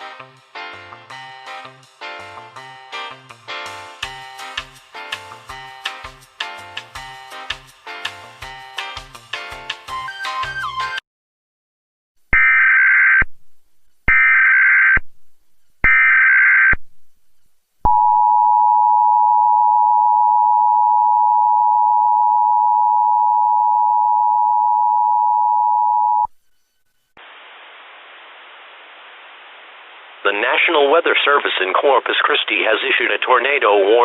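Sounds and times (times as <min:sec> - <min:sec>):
two-tone attention signal: 0:17.9 - 0:26.8
faint steady hiss: 0:26.5 - 0:33.2.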